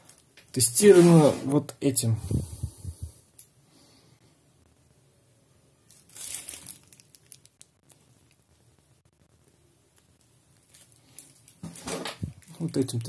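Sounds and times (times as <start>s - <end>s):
packaging crinkling: 5.9s - 8.6s, 9.9s - 13.0s.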